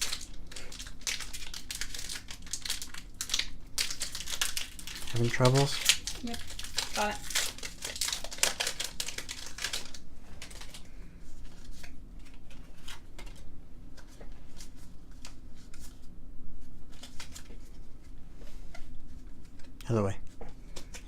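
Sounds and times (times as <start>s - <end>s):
foil wrapper crinkling: 0.0s - 16.0s
cards clicking and rustling: 0.0s - 16.1s, 16.9s - 17.8s, 18.7s - 21.0s.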